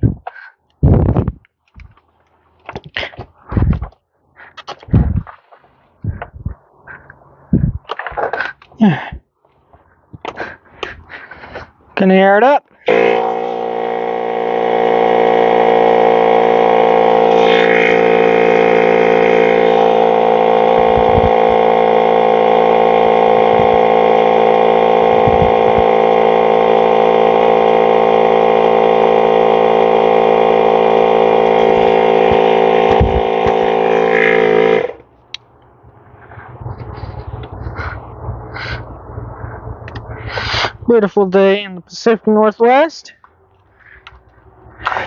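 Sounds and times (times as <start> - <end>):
low thumps: 4.9 - 5.3, 7.5 - 7.9, 16.1 - 26.6, 31.2 - 34.8
electric air compressor running: 12.8 - 35.1.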